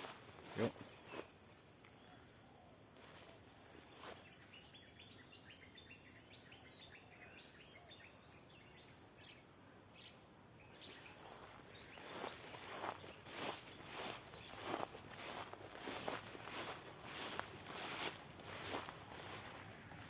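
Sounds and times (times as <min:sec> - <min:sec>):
insects droning: 0:00.0 - 0:20.0
bird chirping: 0:04.2 - 0:17.9.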